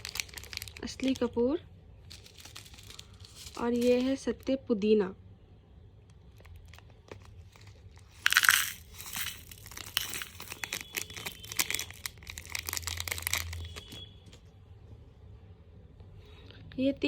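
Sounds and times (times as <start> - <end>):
packaging crinkling: 0.0 - 1.4, 2.0 - 4.3, 6.2 - 14.4.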